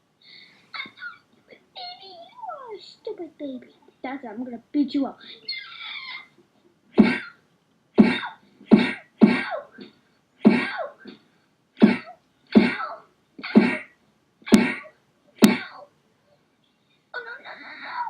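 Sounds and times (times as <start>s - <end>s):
punch hits with grunts: 15.4s - 15.7s.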